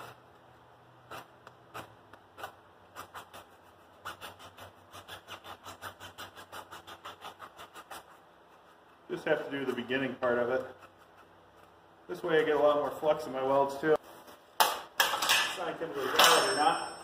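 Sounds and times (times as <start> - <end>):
file scraping welding rod: 0.0 - 13.0.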